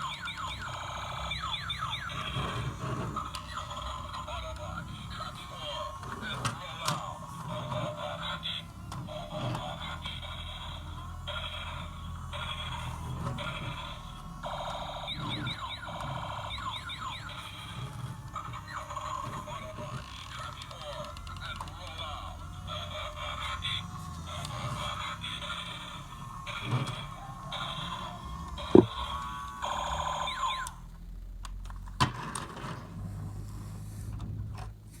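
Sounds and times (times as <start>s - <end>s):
buzzy electronic toy beeps: 14.8s - 17.5s.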